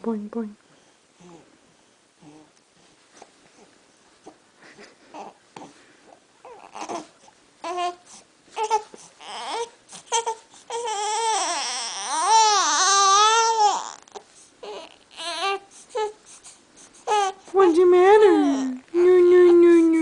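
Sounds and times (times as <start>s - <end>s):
baby whimpering and crying: 6.4s - 16.4s, 17.0s - 17.6s, 18.2s - 20.0s.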